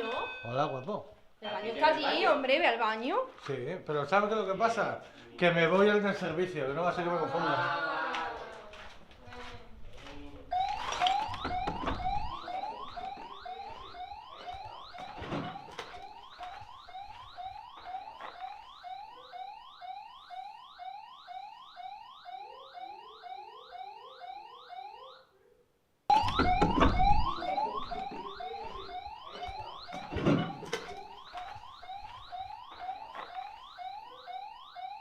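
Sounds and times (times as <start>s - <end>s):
alarm chirping: 0.0s - 1.1s, 10.5s - 25.3s, 26.1s - 35.0s.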